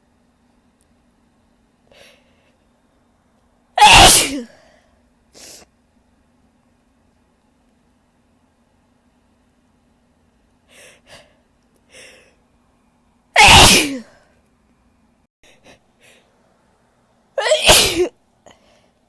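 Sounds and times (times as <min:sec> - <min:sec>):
woman sneezing: 0:03.8 - 0:04.6, 0:13.4 - 0:14.2, 0:17.4 - 0:18.1
small sniffs: 0:05.4 - 0:05.7.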